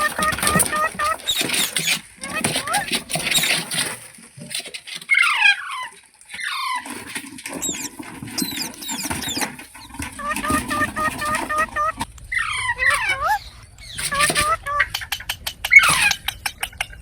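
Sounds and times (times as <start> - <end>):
parrot chirping: 0.0 - 3.5, 7.6 - 17.0
parrot squawking: 0.0 - 3.6, 7.6 - 16.6.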